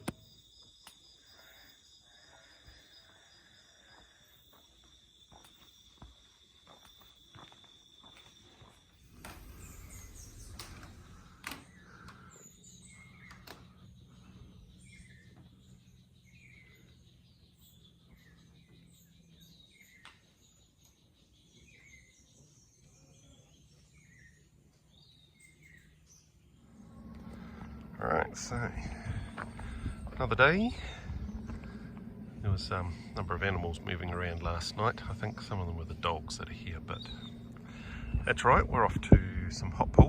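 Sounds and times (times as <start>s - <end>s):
bird calling with falling chirps: 0.0s - 39.8s
low steady hum: 9.0s - 40.0s
higher chirps: 25.8s - 39.0s.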